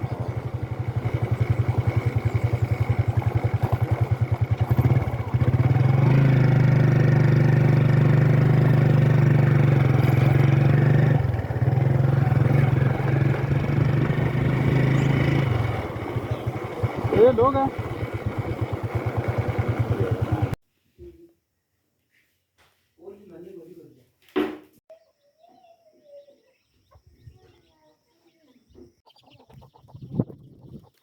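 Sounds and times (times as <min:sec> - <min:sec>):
vehicle engine running: 0:00.0 - 0:20.6.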